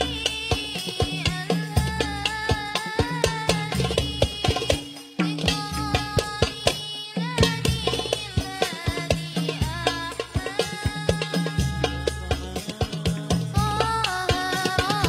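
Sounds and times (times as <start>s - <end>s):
hand drums beat: 0.0s - 15.0s.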